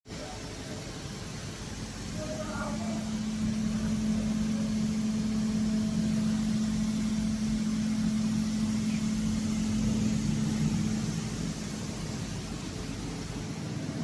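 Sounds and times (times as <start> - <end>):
machine noise hiss: 0.1 - 14.0
drilling machine humming: 0.5 - 14.0.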